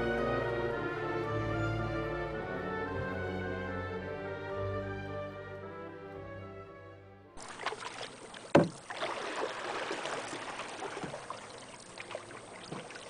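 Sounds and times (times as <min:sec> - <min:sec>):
orchestral music: 0:00.0 - 0:07.4
paddle splashing water: 0:07.4 - 0:13.0
sharp knock on canoe: 0:08.5 - 0:08.8.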